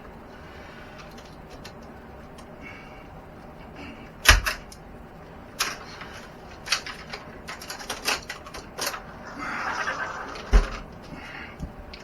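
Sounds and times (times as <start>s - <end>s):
clicks and light knocks: 5.6s - 9.1s.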